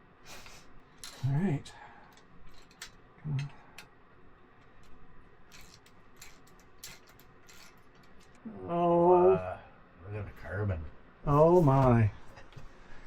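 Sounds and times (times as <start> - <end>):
clicks of small parts and tools: 0.3 - 1.3, 2.0 - 3.9, 4.6 - 8.4
person grunting: 8.5 - 9.7.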